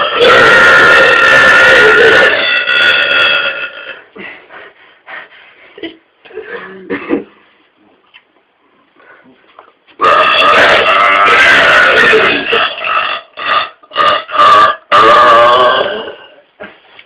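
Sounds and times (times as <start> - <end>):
man burping: 0.0 - 4.0, 5.9 - 7.3, 10.0 - 16.8.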